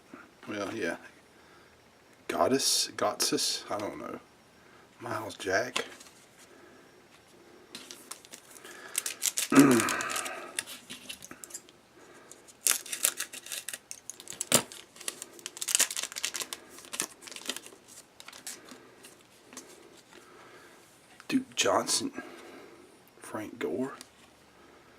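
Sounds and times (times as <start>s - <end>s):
foil wrapper crinkling and tearing: 7.8s - 11.6s, 12.5s - 18.8s
scissors cutting foil: 8.9s - 11.6s, 12.6s - 17.6s.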